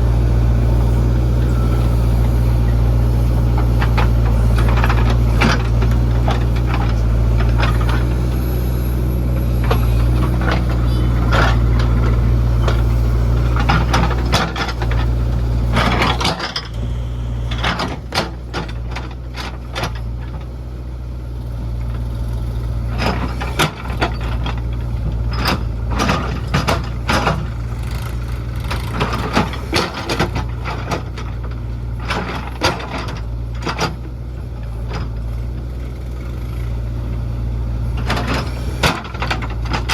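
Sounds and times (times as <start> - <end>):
diesel engine running: 0.0 - 39.9
metal clanks and knocks: 3.5 - 8.2, 9.4 - 16.8, 17.4 - 20.5, 22.9 - 35.3, 38.0 - 39.9.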